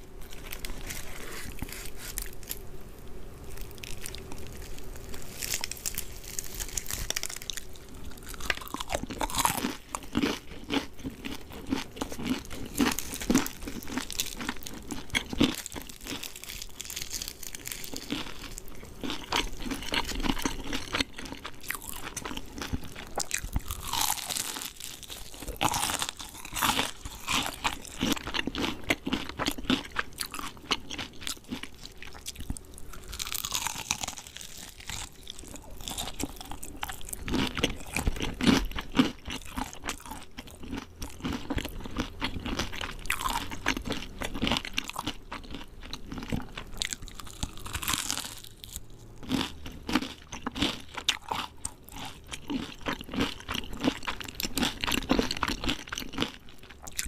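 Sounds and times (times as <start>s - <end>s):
crunching fried chicken: 0.0s - 2.8s, 3.4s - 57.0s.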